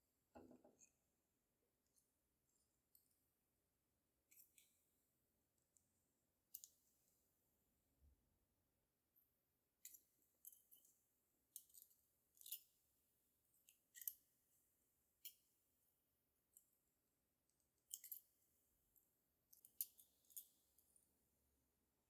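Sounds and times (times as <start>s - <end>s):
small clicks of hand tools: 6.5s - 6.8s.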